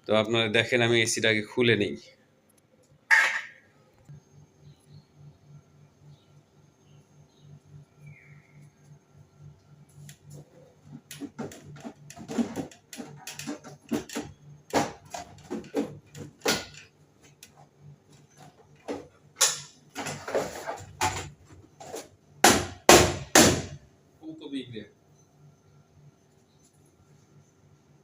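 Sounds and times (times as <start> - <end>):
metal casing knocks and scrapes: 10.9 - 22.1.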